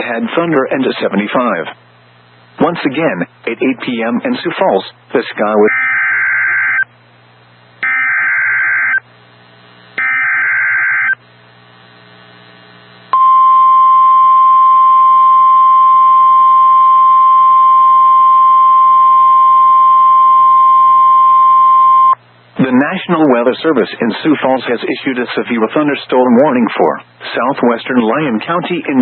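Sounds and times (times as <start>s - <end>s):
steady warning alarm tone: 5.6s - 6.9s, 7.8s - 9.0s, 10.0s - 11.2s, 13.2s - 22.2s.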